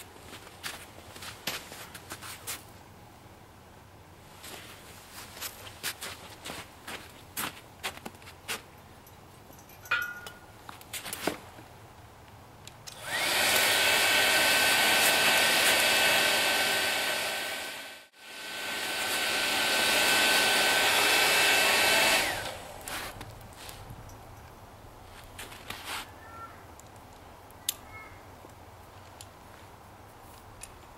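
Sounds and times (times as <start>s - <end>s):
hair dryer blowing air: 13.0s - 23.2s.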